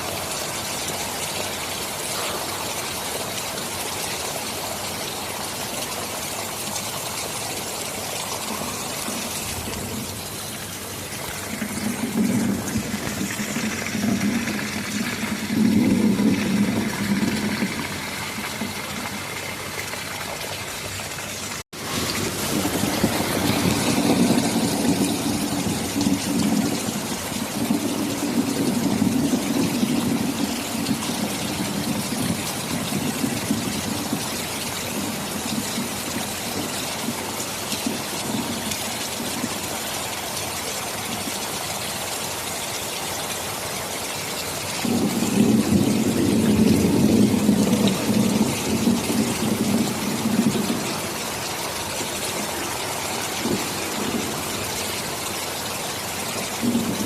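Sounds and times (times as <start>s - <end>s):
heavy rain: 0.0s - 57.0s
rolling thunder: 8.3s - 19.6s, 21.8s - 36.8s, 44.8s - 54.8s, 56.4s - 57.0s.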